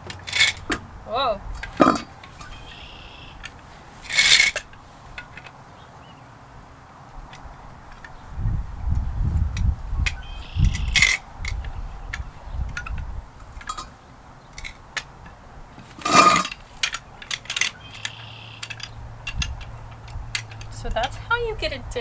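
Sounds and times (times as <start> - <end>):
metal clank: 0.0 - 5.5, 12.7 - 14.0, 14.6 - 21.2
car jack clicking and clinking: 0.0 - 5.6, 9.5 - 21.7.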